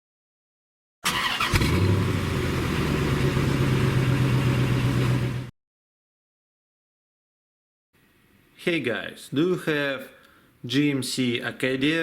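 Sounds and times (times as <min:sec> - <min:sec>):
vehicle engine starting and idling: 0:01.0 - 0:05.5.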